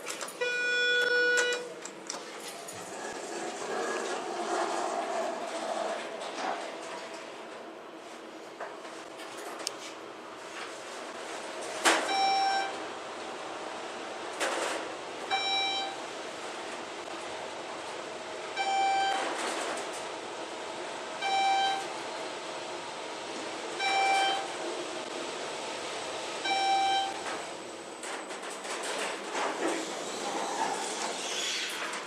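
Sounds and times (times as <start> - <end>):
elevator electronic beep: 0.4 - 1.8, 12.1 - 12.8, 15.3 - 16.0, 18.6 - 19.3, 21.2 - 21.9, 23.8 - 24.6, 26.4 - 27.2.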